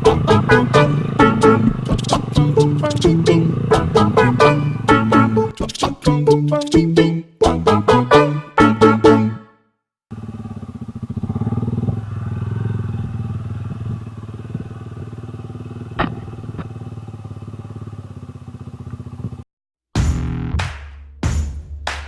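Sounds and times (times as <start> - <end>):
motorcycle engine running: 0.0 - 5.6, 10.1 - 19.5.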